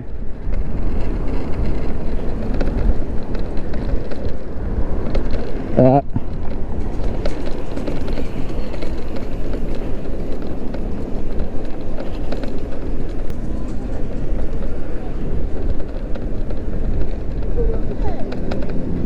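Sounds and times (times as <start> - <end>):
steady low rumble: 0.0 - 19.0
many people talking: 6.8 - 19.0.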